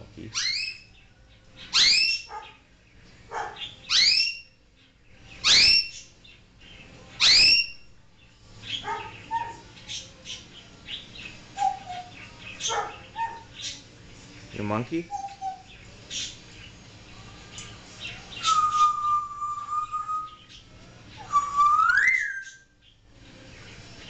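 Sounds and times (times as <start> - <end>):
parrot loud rising calls: 3.9 - 4.4.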